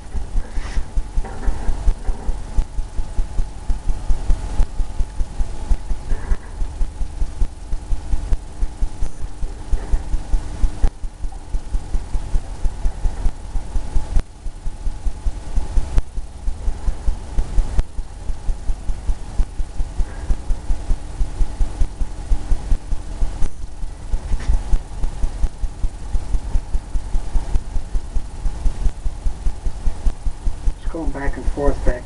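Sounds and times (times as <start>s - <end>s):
paintbrush scrubbing on canvas: 0.4s - 0.9s.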